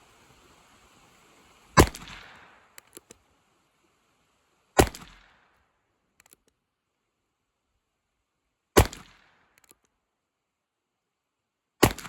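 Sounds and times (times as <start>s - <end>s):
faint clicks: 2.2s - 3.2s, 6.1s - 6.6s, 9.5s - 10.0s
gunshots with echo: 4.8s - 5.2s.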